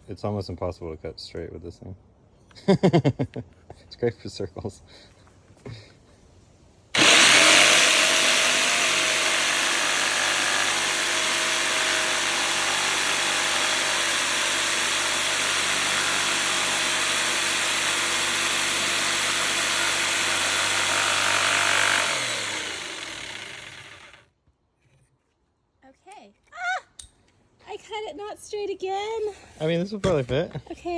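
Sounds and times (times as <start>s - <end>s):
jigsaw cutting board: 7.0s - 24.2s.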